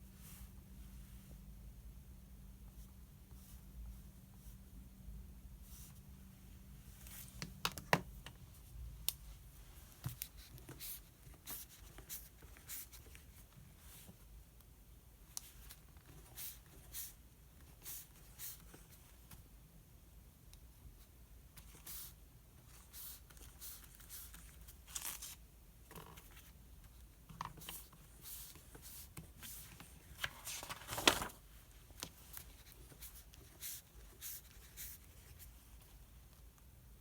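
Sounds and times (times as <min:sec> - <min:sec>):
paper rustling: 0:27.5 - 0:34.9
page being turned: 0:30.1 - 0:31.4.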